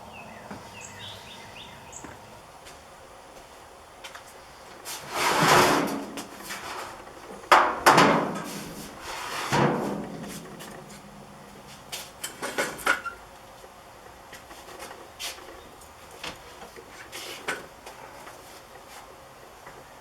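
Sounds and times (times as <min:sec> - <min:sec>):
clattering scrapes: 0:04.8 - 0:07.0.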